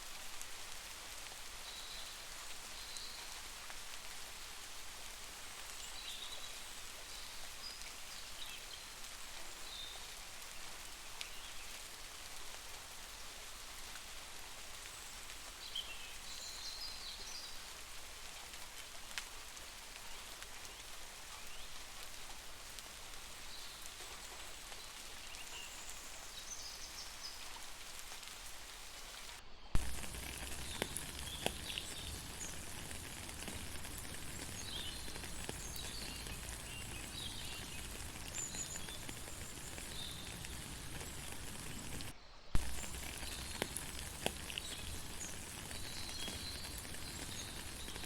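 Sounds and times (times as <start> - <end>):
steady rain falling: 0.0 - 48.0
sharp drip-like tick: 29.8 - 48.0.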